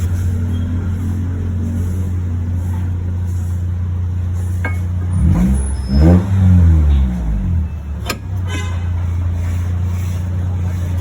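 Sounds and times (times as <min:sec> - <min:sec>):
car engine revving: 0:00.0 - 0:08.5.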